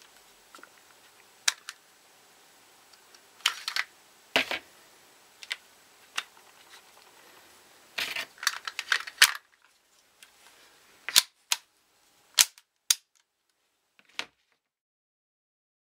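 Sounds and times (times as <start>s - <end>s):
pistol mechanism clicking: 12.4s - 13.2s.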